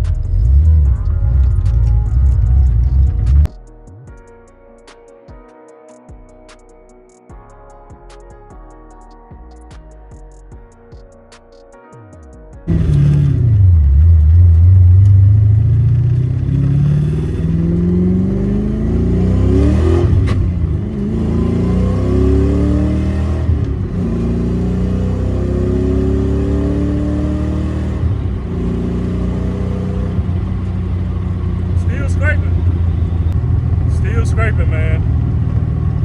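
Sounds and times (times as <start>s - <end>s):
car engine revving: 0.0s - 3.5s, 12.7s - 36.0s.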